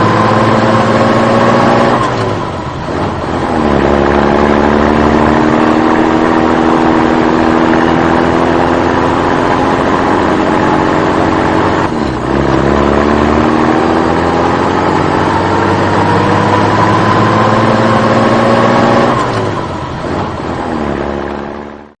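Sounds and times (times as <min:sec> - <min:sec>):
vehicle engine revving: 0:00.0 - 0:22.0.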